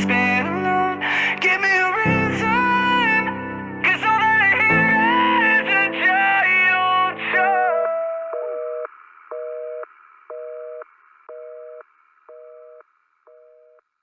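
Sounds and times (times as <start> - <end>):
telephone busy signal beeps: 8.4 - 13.8.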